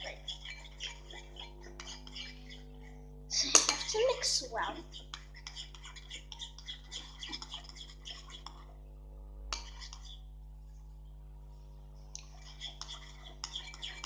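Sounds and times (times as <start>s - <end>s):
spoon stirring slime in bowl: 5.2s - 8.7s, 9.6s - 10.2s.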